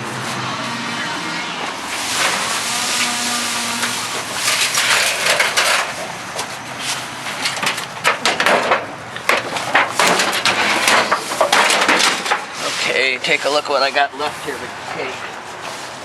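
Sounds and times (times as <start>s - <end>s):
scrap clattering and knocking: 4.2s - 13.4s.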